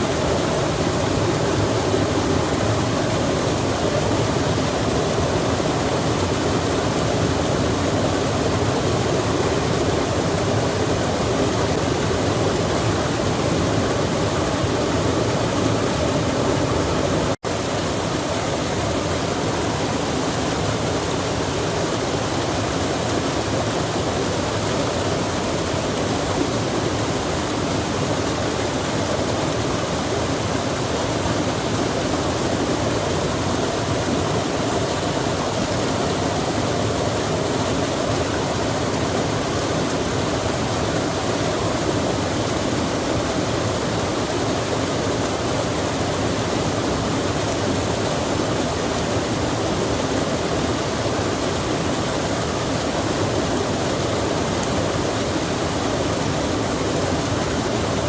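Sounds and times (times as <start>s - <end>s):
running water rushing: 0.0s - 58.0s.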